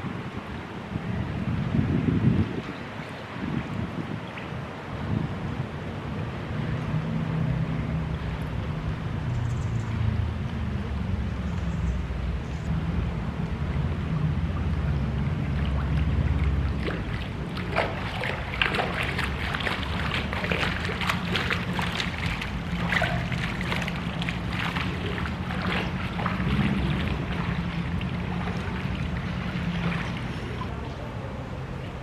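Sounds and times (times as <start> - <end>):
wind noise: 0.0 - 32.0
low vehicle rumble: 4.9 - 32.0.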